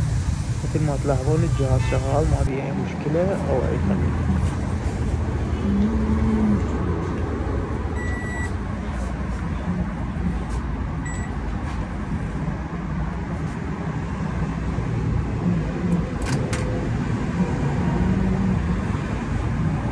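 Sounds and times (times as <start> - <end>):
short beep: 8.0 - 8.6, 11.0 - 11.4.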